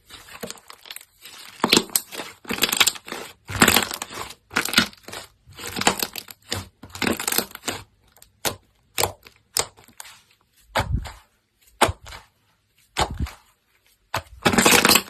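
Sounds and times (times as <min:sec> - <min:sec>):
slime squishing by hand: 0:00.0 - 0:15.0.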